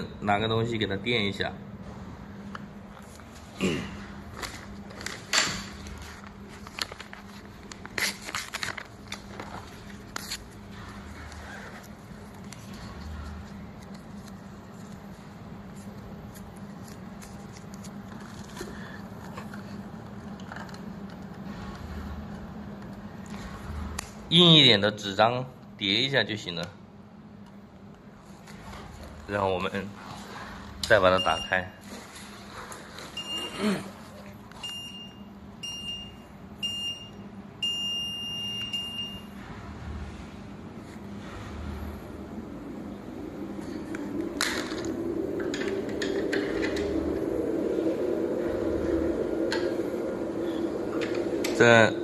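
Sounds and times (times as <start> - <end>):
steady low hum: 0.0 - 52.0
stiff paper rustling and crinkling: 5.9 - 18.9
treadmill console beeps: 31.1 - 31.8, 33.0 - 33.6, 34.6 - 39.4.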